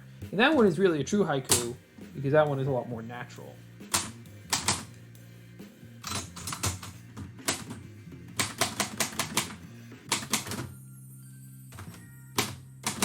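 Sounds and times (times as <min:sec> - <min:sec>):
typewriter keystrokes: 0:03.9 - 0:04.9, 0:06.0 - 0:07.8, 0:08.4 - 0:10.7, 0:11.8 - 0:13.0.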